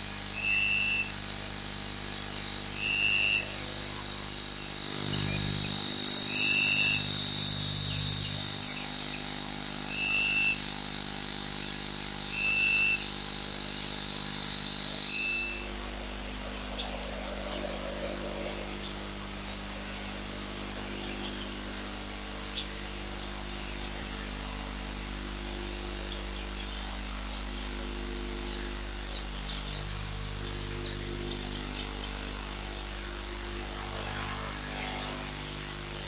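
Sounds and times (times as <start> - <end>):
faint high chirps: 0.0 - 15.8, 25.4 - 35.8
steady low hum: 0.0 - 36.0.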